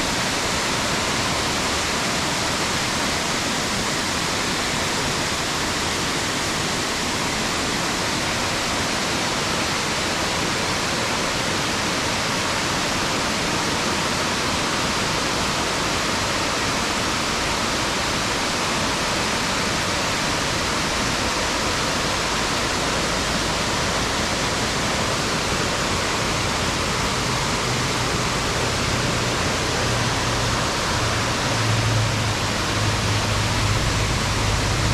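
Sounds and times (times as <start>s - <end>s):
waterfall rushing: 0.0s - 34.9s
low hum: 22.2s - 34.9s.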